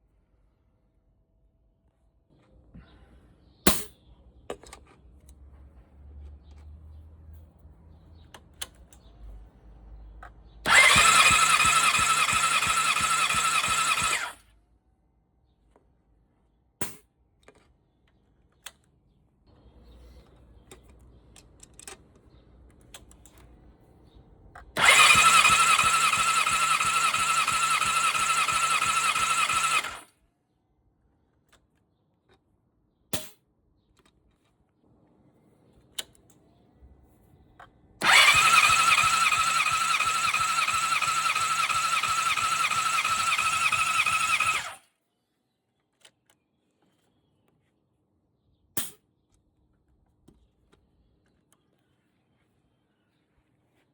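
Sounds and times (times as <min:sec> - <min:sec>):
engine cranking on starter motor: 0:10.6 - 0:14.4, 0:24.8 - 0:30.1, 0:38.0 - 0:44.8
short clicks: 0:24.8 - 0:30.0, 0:38.0 - 0:44.8.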